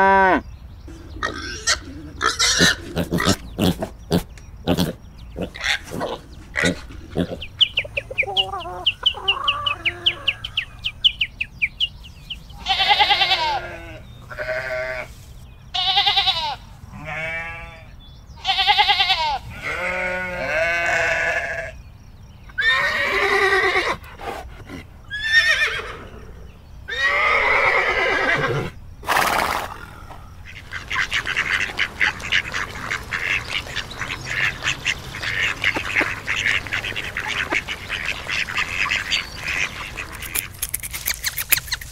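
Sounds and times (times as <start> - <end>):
farm animals bleating: 0.0 - 10.6, 12.6 - 21.8, 22.6 - 24.0.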